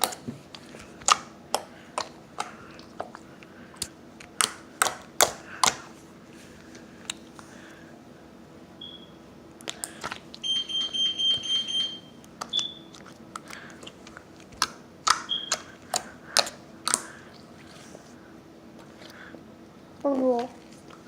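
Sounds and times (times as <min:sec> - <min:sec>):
slime squelching: 0:00.0 - 0:07.8, 0:09.6 - 0:21.0.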